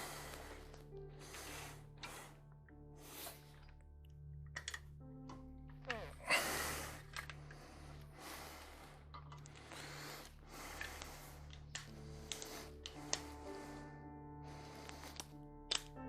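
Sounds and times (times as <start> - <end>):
droning background music: 0.0 - 16.0
small clicks: 10.7 - 13.4, 14.8 - 16.0.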